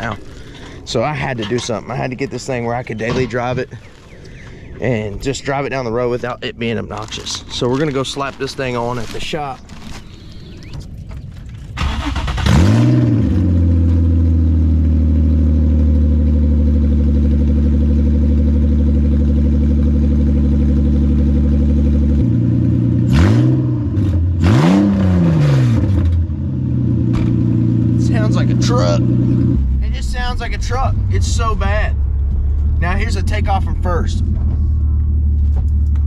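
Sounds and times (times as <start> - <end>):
car engine starting and idling: 0.0 - 36.0
car engine revving: 11.6 - 36.0.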